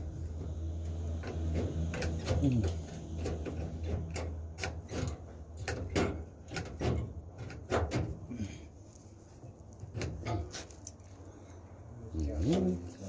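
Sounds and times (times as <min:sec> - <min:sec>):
knocks and taps on sheet metal: 0:01.2 - 0:08.3, 0:09.8 - 0:10.6.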